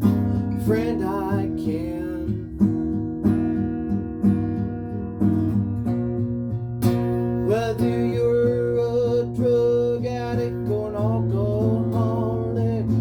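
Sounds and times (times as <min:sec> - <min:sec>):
acoustic guitar strumming chords: 0:00.0 - 0:13.0.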